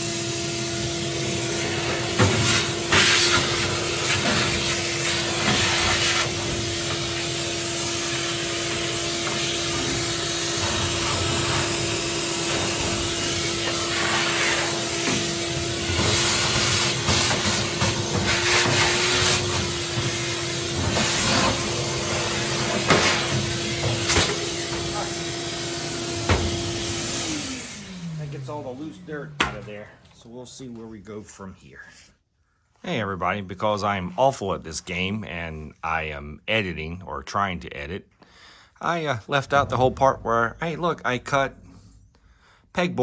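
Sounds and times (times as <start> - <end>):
vacuum cleaner running: 0.0 - 30.2.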